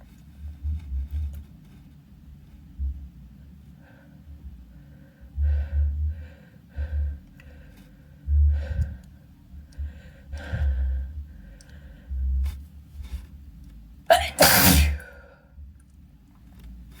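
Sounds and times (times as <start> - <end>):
person sneezing: 14.1 - 15.2.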